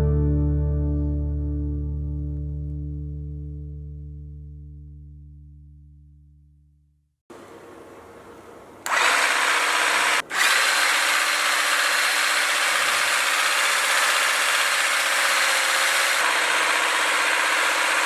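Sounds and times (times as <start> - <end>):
harvesting machine motor buzzing: 8.8 - 18.0.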